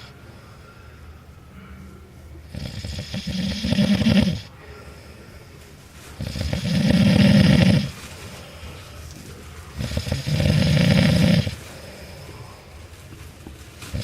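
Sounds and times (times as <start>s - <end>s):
quiet breathing: 0.0s - 14.0s
man snoring: 2.5s - 4.5s, 6.2s - 7.9s, 9.8s - 11.6s.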